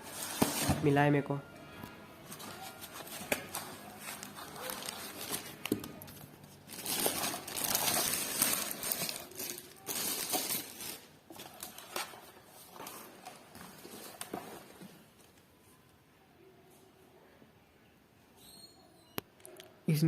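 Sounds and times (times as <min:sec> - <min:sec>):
packaging rustling and scraping: 0:00.0 - 0:01.0, 0:02.2 - 0:15.4.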